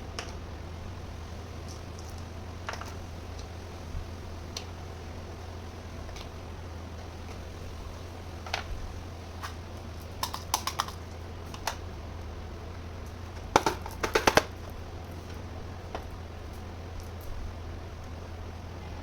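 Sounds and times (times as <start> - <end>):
steady low hum: 0.0 - 19.0
plastic toy pieces clicking: 10.2 - 11.8.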